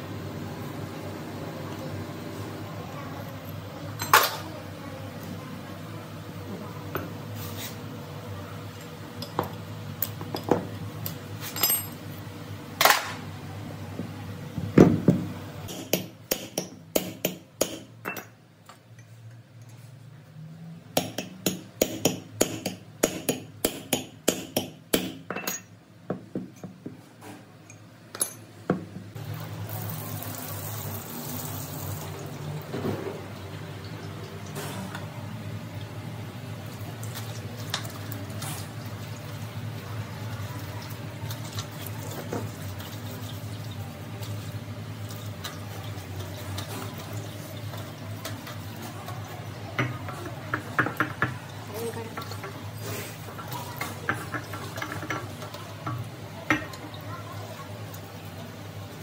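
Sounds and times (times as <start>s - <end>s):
metal parts and tools clinking: 11.4s - 12.0s.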